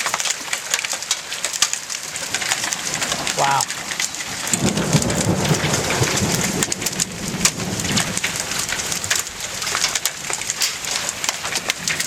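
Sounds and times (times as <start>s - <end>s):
hailstones ticking on tin: 0.0s - 12.0s
heavy rain rushing: 0.0s - 12.0s
low rumble of thunder: 2.9s - 10.4s.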